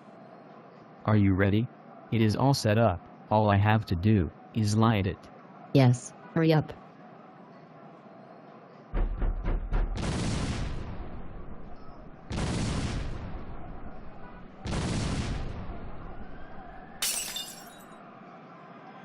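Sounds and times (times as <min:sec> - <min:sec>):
rumbling explosion bursts: 0:09.0 - 0:11.7, 0:12.3 - 0:13.9, 0:14.7 - 0:16.0
explosion blast: 0:09.8 - 0:11.6, 0:12.3 - 0:13.8, 0:14.6 - 0:16.0
shattering crash: 0:17.0 - 0:17.8.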